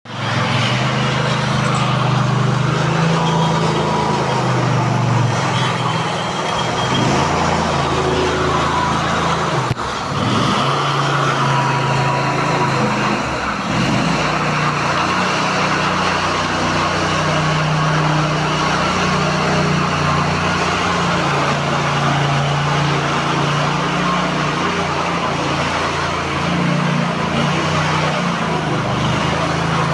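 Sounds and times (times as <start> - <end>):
engine-driven machine running: 0.0 - 29.9.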